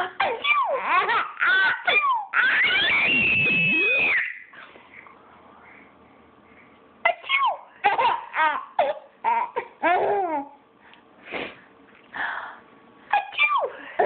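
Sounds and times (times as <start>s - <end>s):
baby laughing: 0.0s - 4.5s, 7.1s - 10.6s.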